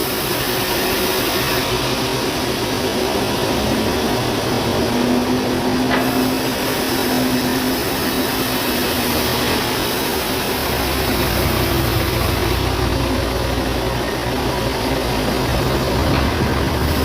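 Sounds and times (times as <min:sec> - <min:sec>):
sawmill machinery drone: 0:00.0 - 0:17.0.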